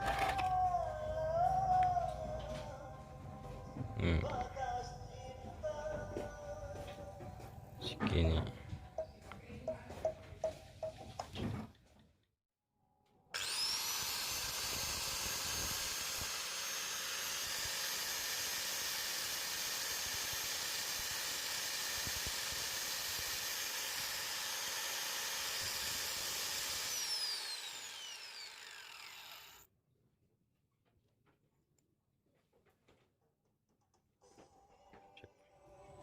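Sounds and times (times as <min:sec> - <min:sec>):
power tool motor whine: 0:13.4 - 0:29.7.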